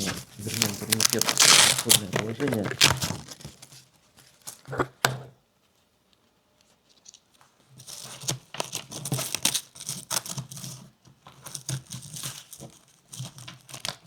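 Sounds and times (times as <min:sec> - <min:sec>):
strap and fabric rustling and ripping: 0:00.0 - 0:03.6.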